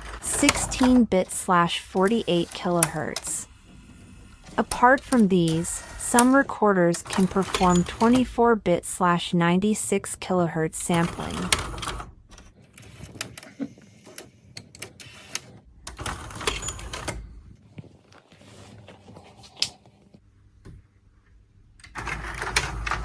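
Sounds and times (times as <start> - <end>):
small mechanical clicks and clunks: 0.0 - 8.4, 10.8 - 17.3, 21.8 - 23.0
tape deck whirring: 0.0 - 8.7, 10.8 - 17.4.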